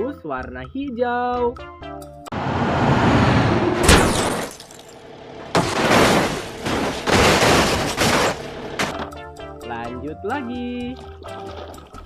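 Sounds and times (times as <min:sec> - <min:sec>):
water splashing over toy: 0:11.0 - 0:12.0.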